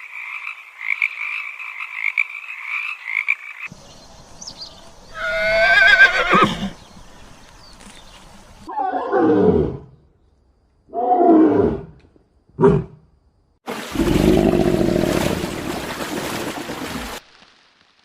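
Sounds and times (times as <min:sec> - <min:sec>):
lion roaring: 0:13.9 - 0:15.4.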